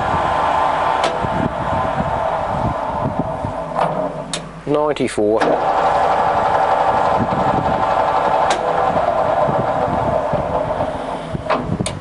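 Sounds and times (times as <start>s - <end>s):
lathe running with steady hum: 0.0s - 4.7s, 5.4s - 11.8s.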